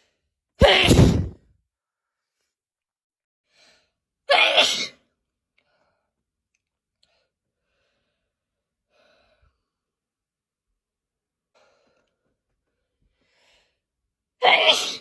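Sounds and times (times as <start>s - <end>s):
person sneezing: 0.6s - 1.4s, 4.3s - 5.0s, 14.4s - 15.0s.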